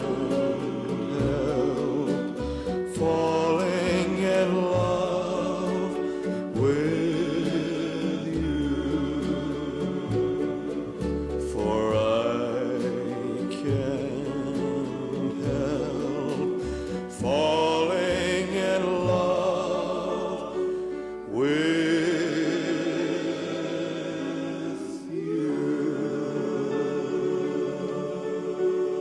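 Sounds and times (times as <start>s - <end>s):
singing with vibrato over music: 0.0s - 29.0s.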